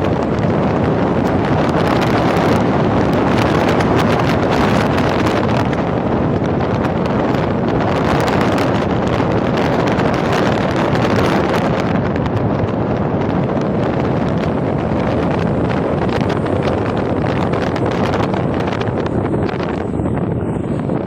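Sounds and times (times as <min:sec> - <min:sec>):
dense riding noise: 0:00.0 - 0:21.0
wind buffeting microphone: 0:00.0 - 0:21.0.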